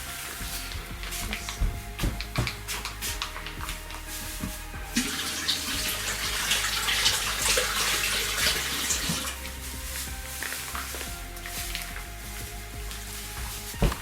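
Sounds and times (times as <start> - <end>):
water running from a tap: 4.8 - 11.8.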